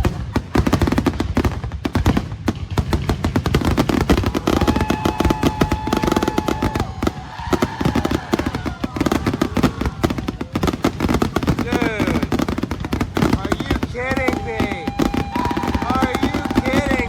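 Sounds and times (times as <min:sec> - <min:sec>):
fireworks booming and crackling: 0:00.0 - 0:17.0.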